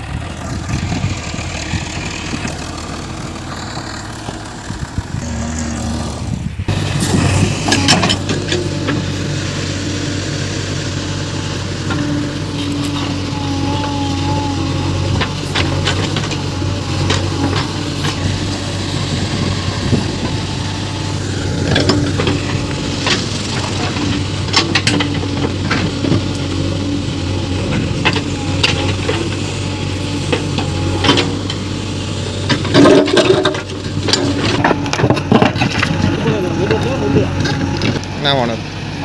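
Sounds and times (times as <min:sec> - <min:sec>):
diesel engine running: 0:00.0 - 0:39.0
loud clatter: 0:32.3 - 0:38.1.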